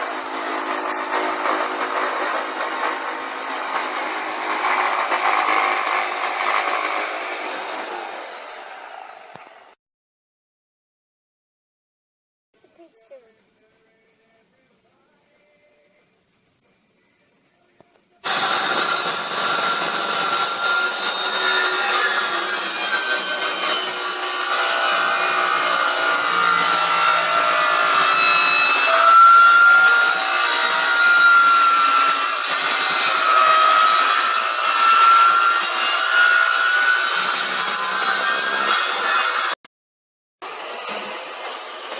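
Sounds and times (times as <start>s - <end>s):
jigsaw cutting through wood: 0.0s - 9.8s, 18.2s - 39.6s, 40.4s - 41.9s.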